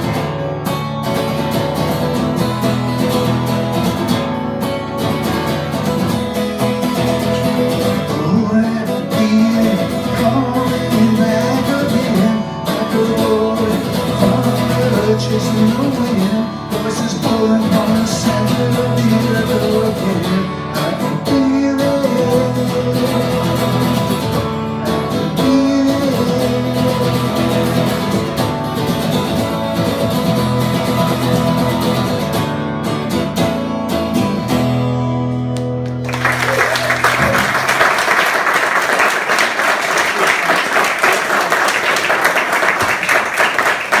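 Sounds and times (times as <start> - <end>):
guitar music: 0.0 - 38.1
applause: 35.4 - 44.0.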